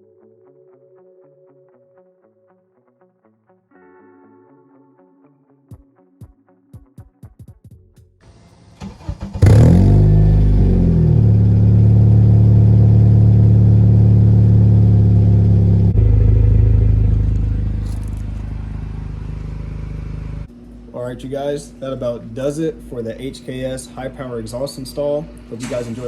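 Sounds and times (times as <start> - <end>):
car engine revving through exhaust: 8.3 - 20.5.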